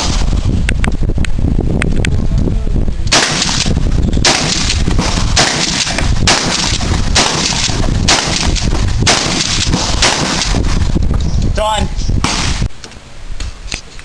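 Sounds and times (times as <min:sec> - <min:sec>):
gunshots with echo: 0:03.1 - 0:10.7, 0:12.2 - 0:12.7.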